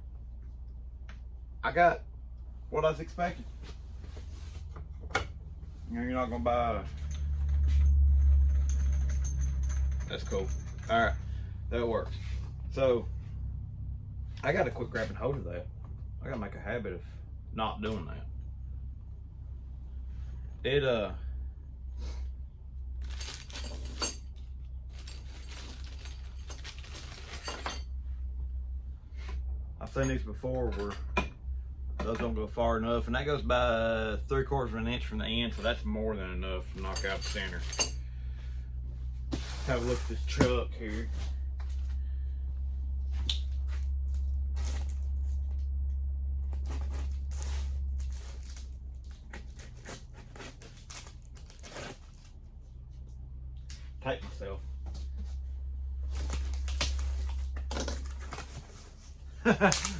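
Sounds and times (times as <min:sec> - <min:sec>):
steady low hum: 0:00.0 - 0:59.9
small hard parts clinking: 0:06.8 - 0:11.6, 0:23.0 - 0:28.0, 0:36.6 - 0:38.1
cardboard packaging tearing: 0:46.6 - 0:52.3.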